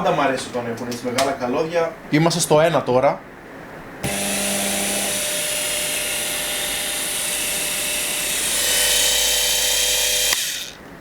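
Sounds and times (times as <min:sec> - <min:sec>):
wood router motor whining: 0:04.0 - 0:10.8.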